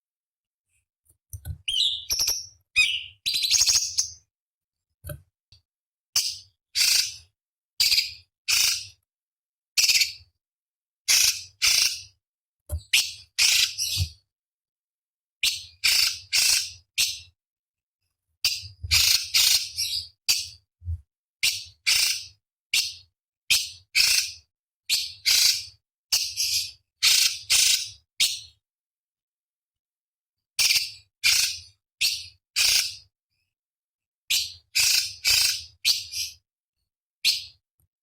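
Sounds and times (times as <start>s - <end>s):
bird giving harsh high calls: 1.7s - 4.1s.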